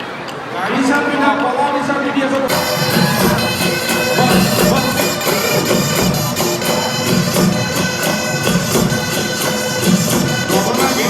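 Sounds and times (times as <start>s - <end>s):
drums beating steady rhythm: 2.5s - 11.0s
hornpipes holding reedy notes: 2.5s - 11.0s.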